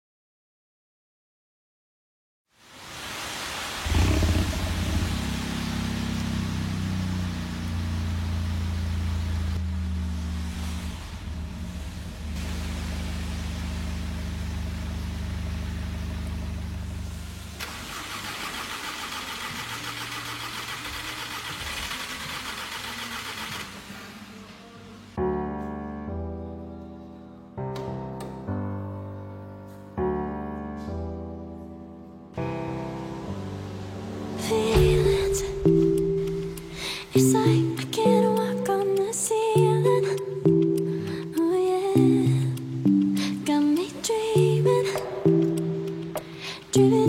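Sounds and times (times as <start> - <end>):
engine running: 3.8 - 24.6.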